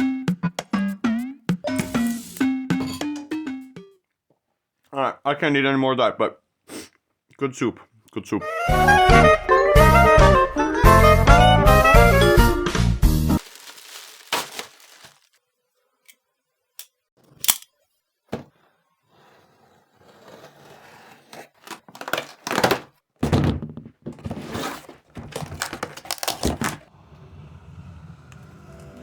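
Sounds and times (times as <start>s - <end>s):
cardboard scraping and tearing: 13.4s - 15.4s, 19.1s - 23.0s, 24.0s - 26.9s
cardboard boxes knocking: 21.6s - 26.8s.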